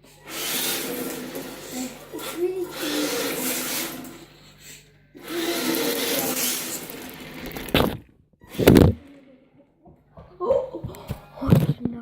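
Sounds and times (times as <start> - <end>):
small electric motor whirring: 0.0 - 4.4, 5.2 - 9.0.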